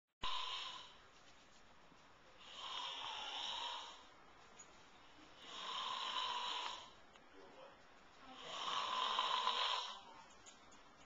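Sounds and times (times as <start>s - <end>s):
man snoring: 0.2s - 0.9s, 2.4s - 4.1s, 5.4s - 7.0s, 8.4s - 10.1s.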